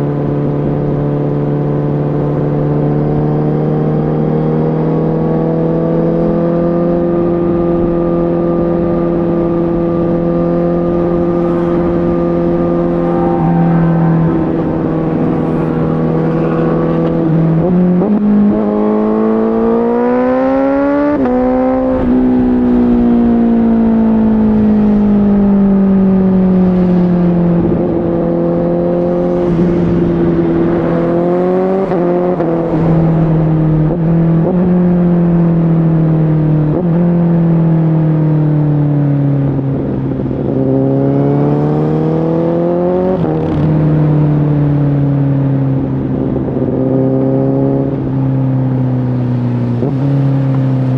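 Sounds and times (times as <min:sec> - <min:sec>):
motorcycle engine revving: 0:02.2 - 0:37.4
wind noise: 0:06.6 - 0:37.5, 0:42.2 - 0:50.9.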